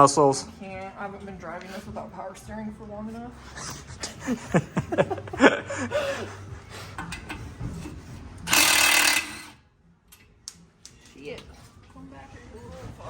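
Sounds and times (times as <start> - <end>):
power tool burst: 8.5 - 9.6.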